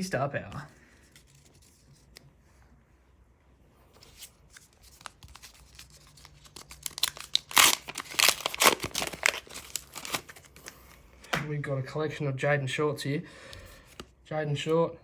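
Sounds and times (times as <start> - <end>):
card pack wrapper tearing and crinkling: 4.0 - 10.8.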